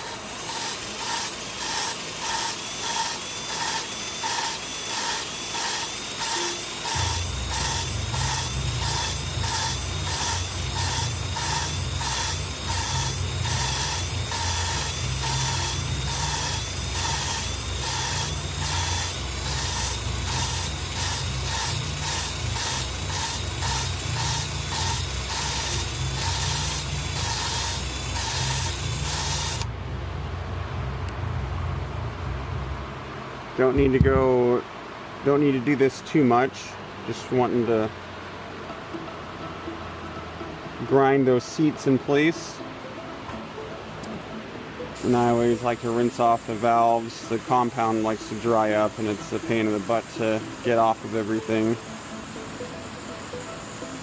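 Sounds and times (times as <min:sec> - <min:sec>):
valve lapping gritty rasp: 0:00.0 - 0:29.7, 0:45.0 - 0:51.9.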